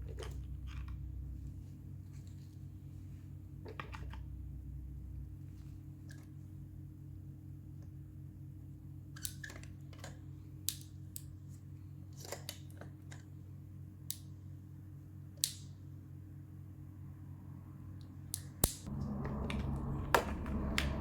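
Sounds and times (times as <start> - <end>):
low hum: 0.0 - 9.1, 14.6 - 21.0
small clicks and snaps: 9.1 - 11.4, 14.0 - 14.4, 15.4 - 15.8, 18.0 - 18.9.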